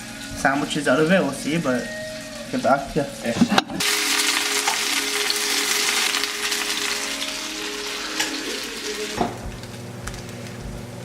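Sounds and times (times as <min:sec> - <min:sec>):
fish frying in hot oil: 0:03.8 - 0:11.0.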